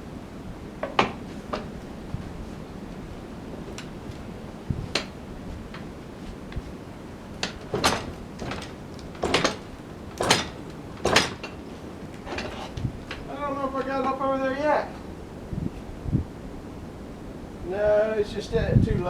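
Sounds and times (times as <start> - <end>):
wind noise: 0.0 - 19.0
log knocking and scraping on metal: 0.8 - 2.7, 3.5 - 14.3.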